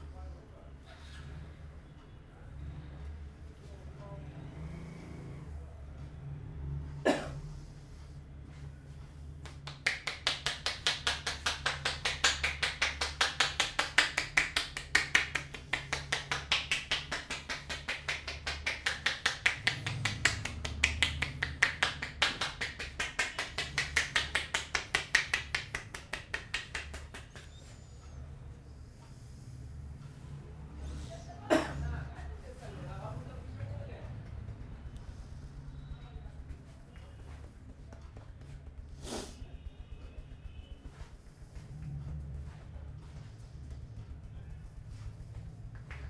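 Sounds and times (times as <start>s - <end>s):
hands slapping body: 9.4s - 27.6s.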